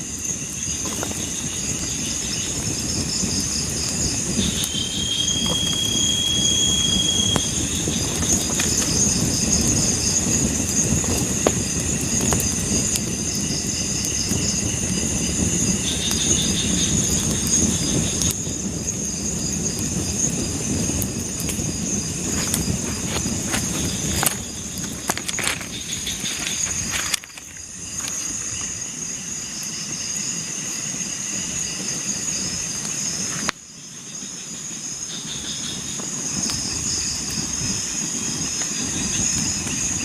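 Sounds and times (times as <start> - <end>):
insects buzzing and trilling: 0.0 - 40.0
held whistle-like note: 4.5 - 7.9.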